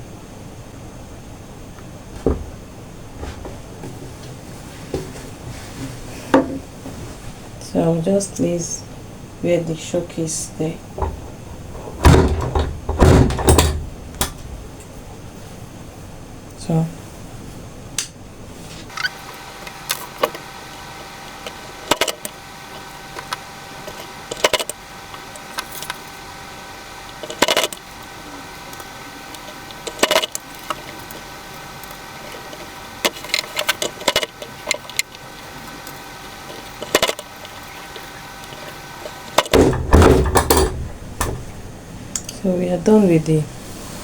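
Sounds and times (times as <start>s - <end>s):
faint steady hum: 0.0s - 44.0s
press machine clicks and knocks: 11.0s - 14.7s, 39.3s - 41.6s.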